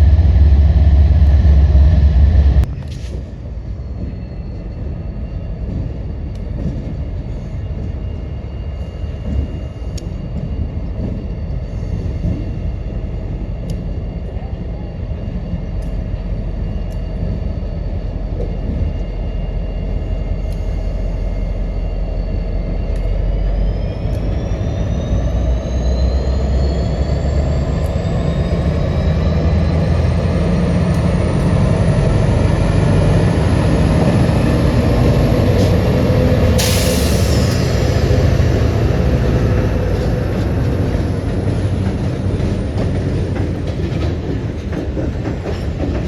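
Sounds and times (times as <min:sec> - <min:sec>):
high whine rising in pitch: 0:00.0 - 0:02.7, 0:16.3 - 0:42.8
diesel locomotive rumble: 0:00.0 - 0:46.0.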